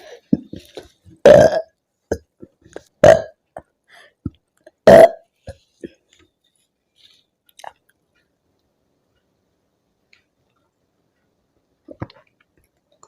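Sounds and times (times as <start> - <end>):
woman burping: 1.2 - 2.3, 3.0 - 3.4, 4.8 - 5.2.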